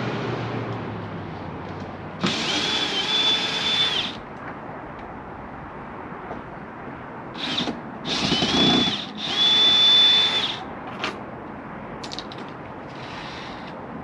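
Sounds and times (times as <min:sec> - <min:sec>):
power drill whining: 0:02.2 - 0:04.2, 0:07.4 - 0:10.6, 0:12.9 - 0:13.8.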